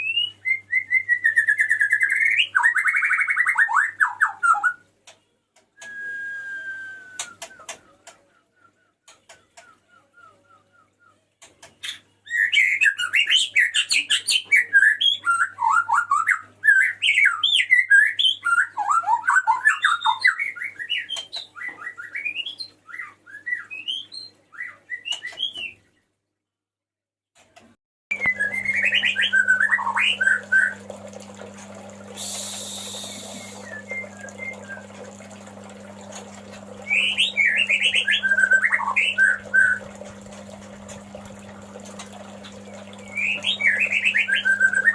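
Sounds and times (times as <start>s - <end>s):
bird singing whistled phrases: 0.0s - 4.8s, 5.8s - 7.8s, 12.2s - 25.8s, 28.1s - 30.8s, 32.2s - 34.9s, 36.8s - 39.9s, 42.7s - 44.9s
low hum: 28.1s - 44.9s.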